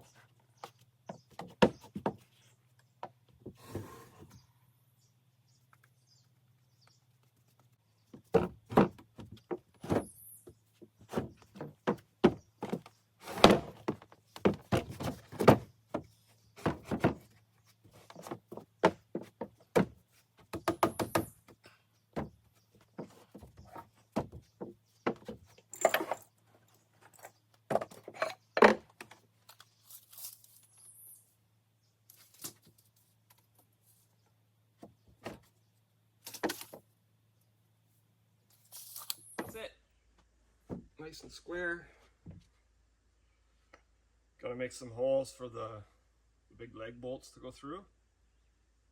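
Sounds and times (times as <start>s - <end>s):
wooden knocks and thunks: 0.7s - 2.3s, 8.1s - 26.2s, 27.7s - 29.2s, 34.8s - 35.5s, 40.6s - 41.0s, 42.2s - 42.5s.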